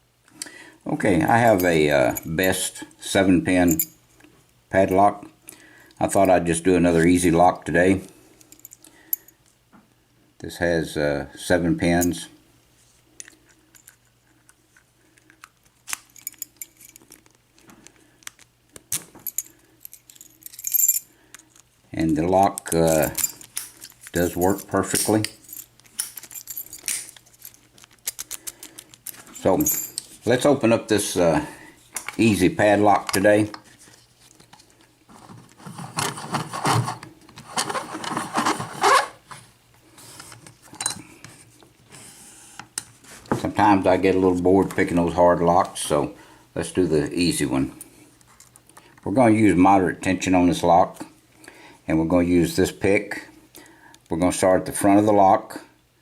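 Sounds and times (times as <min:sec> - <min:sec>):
padlock metal clicks and rattles: 0:15.3 - 0:17.4, 0:22.6 - 0:30.0
metal tools scraping a padlock: 0:15.9 - 0:17.4.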